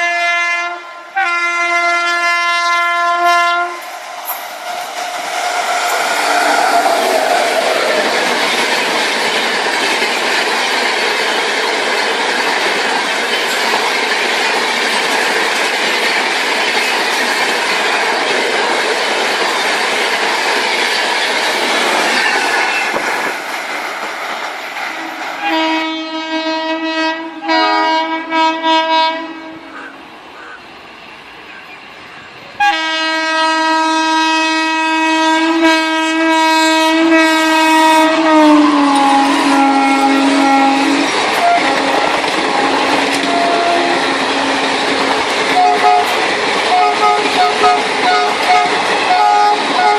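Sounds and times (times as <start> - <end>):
train horn blasts: 0.0 - 4.4, 5.1 - 7.7, 25.4 - 30.0, 32.6 - 49.9
train rumbling past: 0.0 - 49.9.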